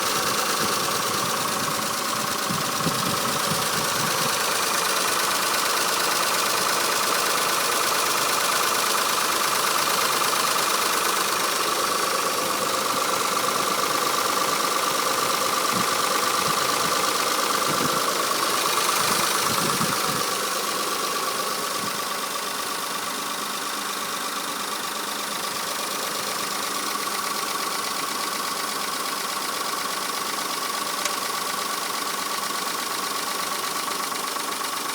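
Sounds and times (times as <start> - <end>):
car engine running: 0.0 - 34.9
rapid knocking of engine lifters: 0.0 - 34.9.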